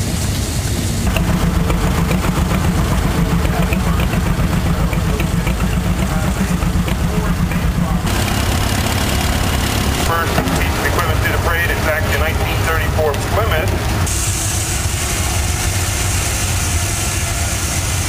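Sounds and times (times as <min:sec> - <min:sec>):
hiss: 0:00.0 - 0:06.8, 0:14.0 - 0:18.0
engine idling: 0:00.0 - 0:18.0.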